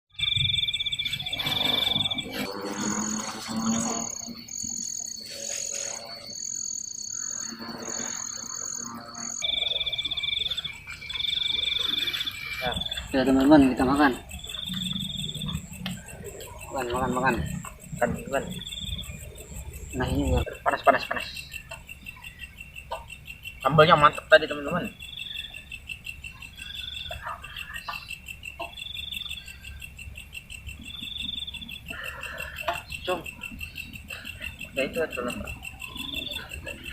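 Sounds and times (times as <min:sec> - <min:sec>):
insects high whine: 0:00.1 - 0:36.9
lower chorus of calls: 0:00.2 - 0:23.0, 0:30.7 - 0:36.9.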